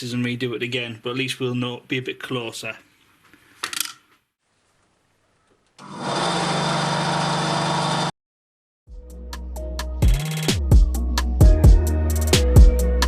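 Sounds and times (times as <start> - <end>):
small electric power tool cutting: 5.8 - 8.2
music: 8.9 - 13.0.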